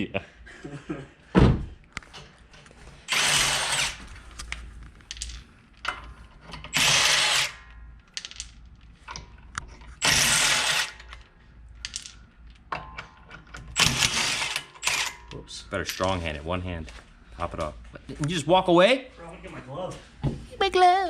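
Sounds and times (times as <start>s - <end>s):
power tool spinning lug nuts: 3.1s - 4.1s, 6.5s - 7.8s, 10.0s - 11.2s, 13.5s - 15.2s.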